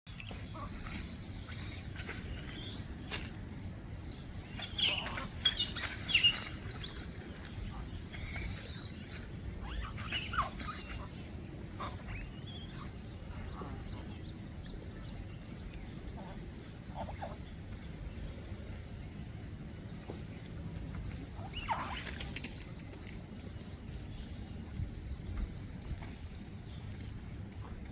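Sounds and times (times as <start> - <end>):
high-pitched animal squeals: 0.1 - 3.4, 4.4 - 7.2, 8.2 - 11.1, 21.4 - 22.4.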